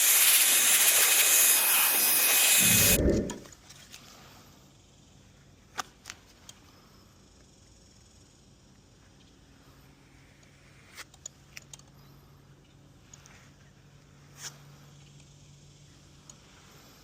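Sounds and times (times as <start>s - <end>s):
paint sprayer hissing: 0.0s - 3.4s
short low puff: 2.6s - 3.5s.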